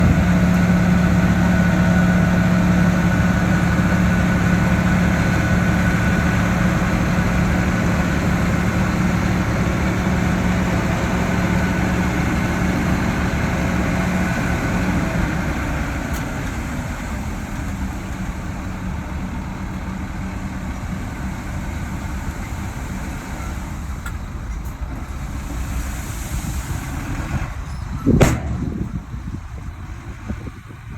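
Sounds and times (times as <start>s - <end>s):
heavy diesel engine running: 0.0s - 30.9s
strong low hum: 28.0s - 30.9s.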